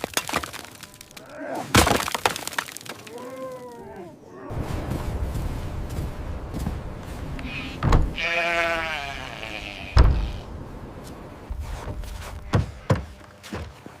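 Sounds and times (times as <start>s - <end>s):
sheep bleating: 7.4s - 10.5s.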